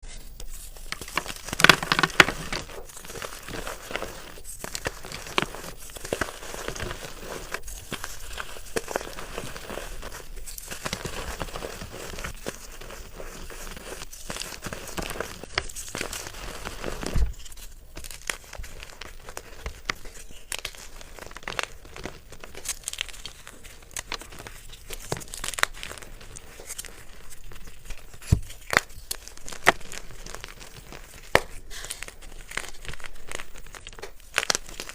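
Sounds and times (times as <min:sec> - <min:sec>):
crumbly material being crushed: 0:00.0 - 0:34.9.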